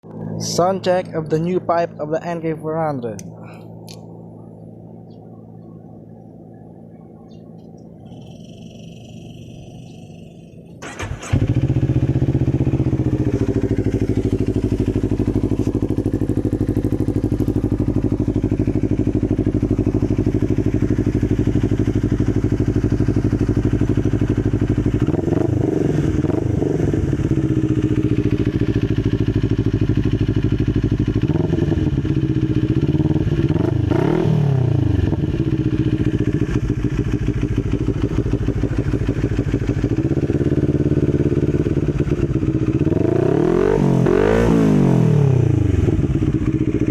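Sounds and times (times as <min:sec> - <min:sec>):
motorcycle engine idling: 0:03.2 - 0:43.1, 0:45.2 - 0:46.9
motorcycle engine revving: 0:03.9 - 0:46.9.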